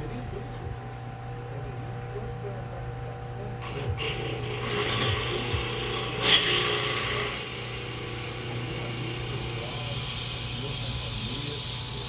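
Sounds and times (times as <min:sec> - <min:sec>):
drill bit scraping metal: 0:03.6 - 0:12.0
drill press motor hum: 0:03.6 - 0:12.0.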